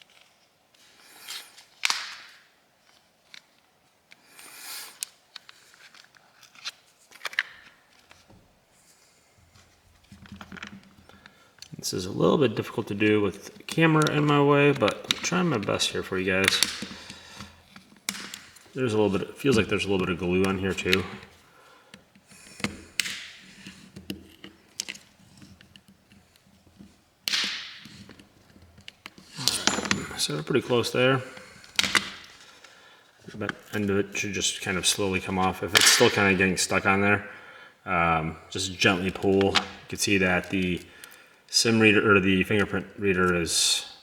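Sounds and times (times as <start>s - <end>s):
plastic clips snapping loose: 1.8s - 2.4s, 14.0s - 18.8s, 19.6s - 25.9s, 26.8s - 29.8s, 31.3s - 32.7s, 35.7s - 36.4s
scraping hiss: 4.2s - 5.0s.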